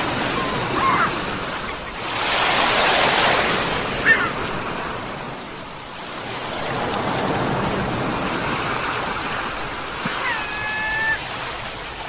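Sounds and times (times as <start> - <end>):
sea waves washing in: 0.0 - 12.0
seagull call: 0.2 - 2.0, 4.0 - 4.5, 10.0 - 11.4.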